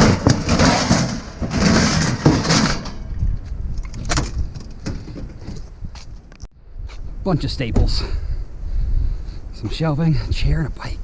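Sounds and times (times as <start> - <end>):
metal oven scraping and clattering: 0.0 - 3.2.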